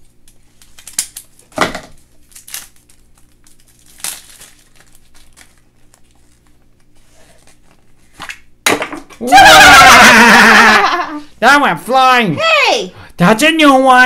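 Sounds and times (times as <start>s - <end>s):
toy packaging crinkling and tearing: 0.0s - 6.6s.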